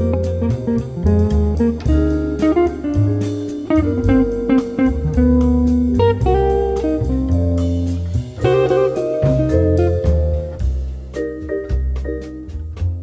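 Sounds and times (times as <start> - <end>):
bass line: 0.0 - 13.0
guitar plucked notes: 0.0 - 13.0.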